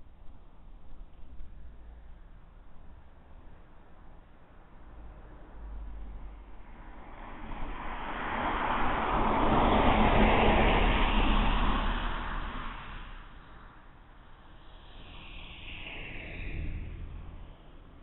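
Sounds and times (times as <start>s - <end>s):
vehicle passing by: 5.4s - 18.0s.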